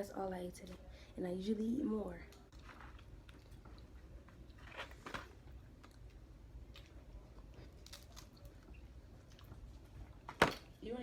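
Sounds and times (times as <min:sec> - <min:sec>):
person chewing: 0:02.5 - 0:10.2.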